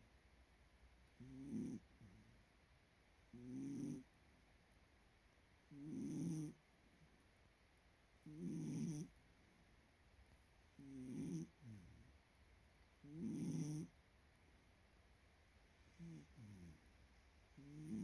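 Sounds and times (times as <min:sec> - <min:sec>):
dog snoring: 0:01.2 - 0:02.3, 0:03.3 - 0:04.1, 0:05.7 - 0:06.6, 0:08.2 - 0:09.2, 0:10.8 - 0:12.1, 0:13.0 - 0:14.0, 0:15.9 - 0:16.9, 0:17.6 - 0:18.0.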